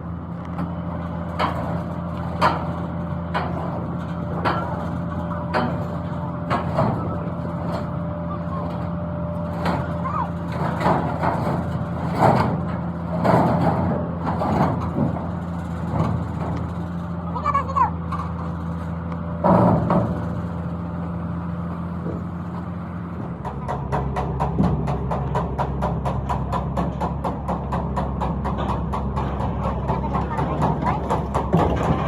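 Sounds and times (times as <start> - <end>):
engine running steadily: 0.0 - 32.0
sharp knocks: 23.2 - 30.0.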